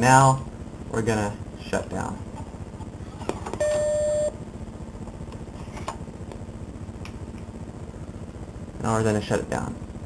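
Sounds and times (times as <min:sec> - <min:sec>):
computer low hum: 0:00.0 - 0:10.0
computer alert beep: 0:03.6 - 0:04.4.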